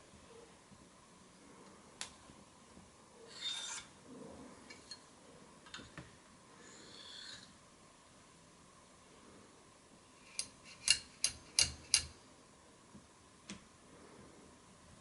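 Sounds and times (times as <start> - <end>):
metal scraping and clicking: 10.3 - 12.1.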